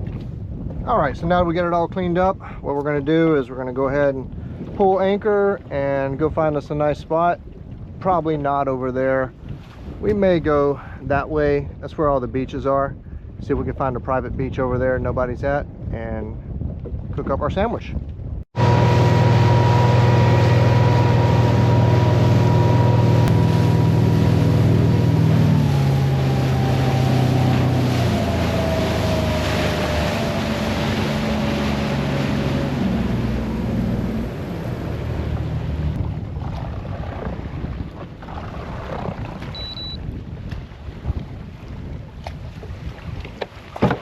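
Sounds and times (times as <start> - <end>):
water noise: 0.0 - 11.8, 16.7 - 44.0
wind on microphone: 0.0 - 44.0
boat motor running: 18.5 - 40.2.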